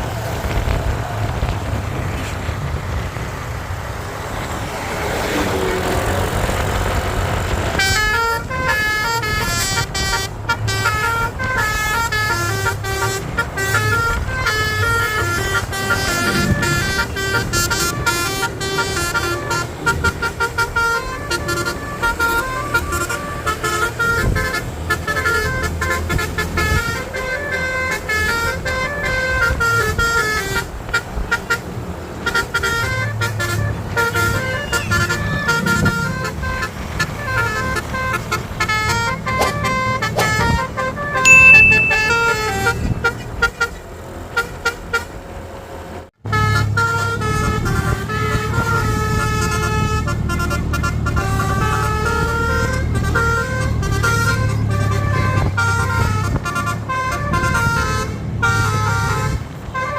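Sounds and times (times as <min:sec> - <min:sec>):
bus engine: 0:00.0 - 0:41.3, 0:42.5 - 0:59.9
road noise: 0:00.0 - 0:59.9
musical air horn melody: 0:41.2 - 0:43.2.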